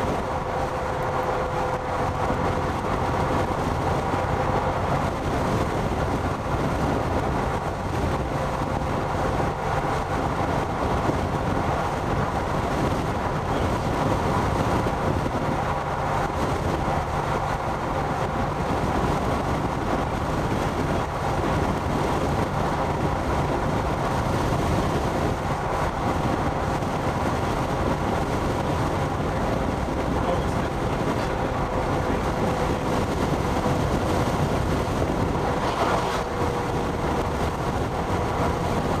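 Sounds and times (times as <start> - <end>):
road and engine noise: 0.0 - 39.0.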